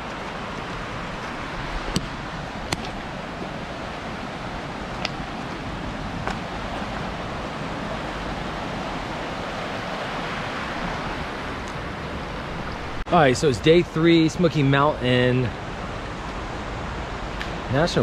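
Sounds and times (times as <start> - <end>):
stream rushing over rocks: 0.0 - 13.3.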